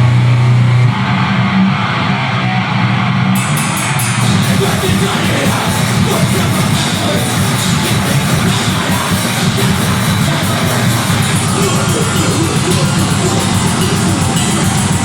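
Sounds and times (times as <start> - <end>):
distorted metal band playing: 0.0 - 15.0
cymbal strokes: 3.4 - 15.0.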